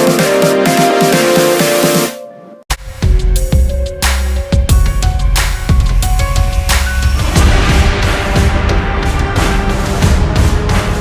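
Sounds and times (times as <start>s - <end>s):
electronic music with heavy bass: 0.0s - 11.0s
sharp drum hits: 7.2s - 11.0s.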